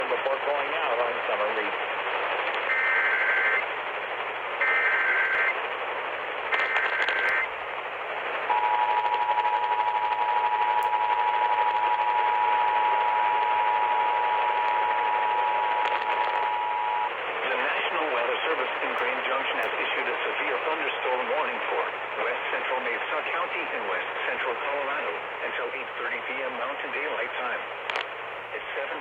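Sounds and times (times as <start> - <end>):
radio hiss: 0.0 - 29.0
digital data tone bursts: 4.6 - 5.6, 6.6 - 7.5.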